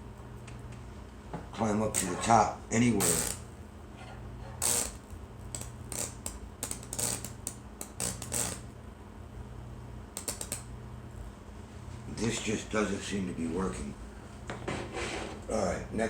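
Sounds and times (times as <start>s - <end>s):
electric arc crackling snaps: 1.8s - 2.2s, 3.0s - 3.6s, 4.6s - 8.8s, 10.1s - 10.8s.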